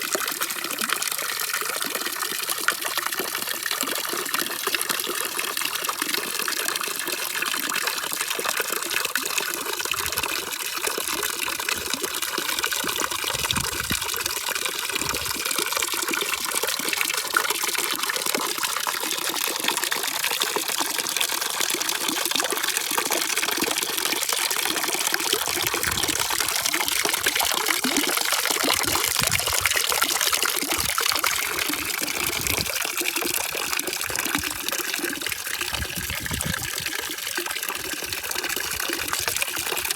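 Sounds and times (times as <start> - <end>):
running water rushing: 0.0 - 6.1, 8.1 - 39.9.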